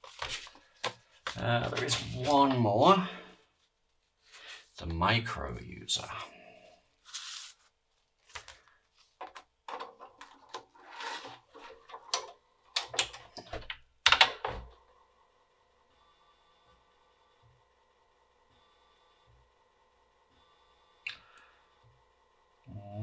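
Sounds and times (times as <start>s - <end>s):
floppy disk sliding rustles: 0.0s - 2.7s
faint steady hum: 0.1s - 23.0s.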